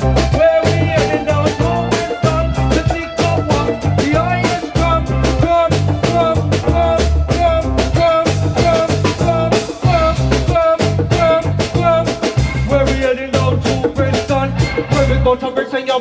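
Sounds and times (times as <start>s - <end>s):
bouncing bass line: 0.0s - 15.3s
reggae band playing: 0.0s - 16.0s.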